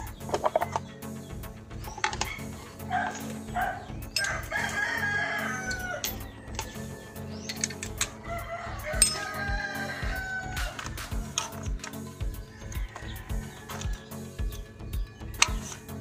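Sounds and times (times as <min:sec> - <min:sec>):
rooster crowing: 0:02.8 - 0:07.3, 0:08.1 - 0:14.3
sharp clicks: 0:05.7 - 0:08.2.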